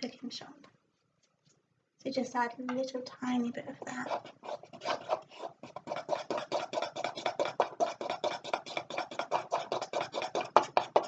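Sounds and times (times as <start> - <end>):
utensil beating icing in bowl: 3.8 - 11.0.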